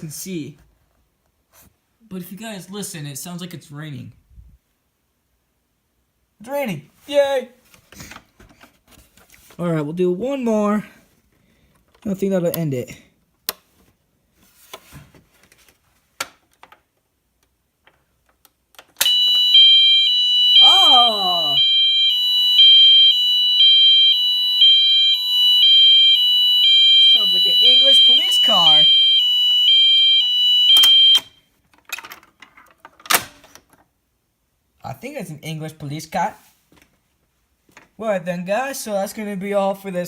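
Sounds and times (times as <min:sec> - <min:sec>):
soft rustle: 0:13.6 - 0:16.1, 0:36.3 - 0:37.7
two-tone alarm: 0:19.0 - 0:31.5.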